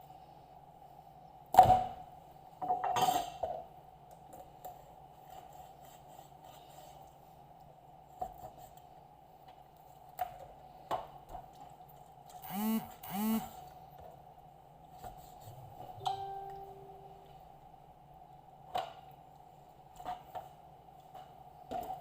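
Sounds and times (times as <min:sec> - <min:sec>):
dishes clattering: 0:02.6 - 0:03.5.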